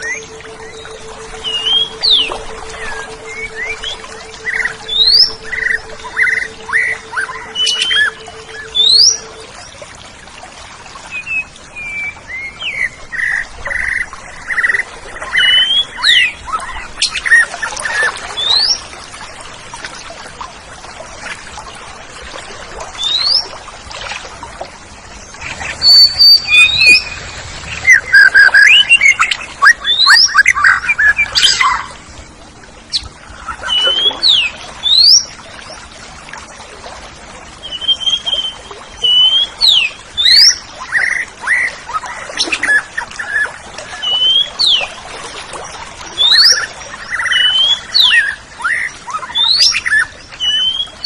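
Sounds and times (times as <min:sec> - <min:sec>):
magpie-robin singing whistles: 0:00.0 - 0:09.4, 0:25.7 - 0:31.9, 0:37.7 - 0:41.7, 0:44.0 - 0:44.8, 0:46.2 - 0:51.0
loud fast bird chirps: 0:25.4 - 0:31.9.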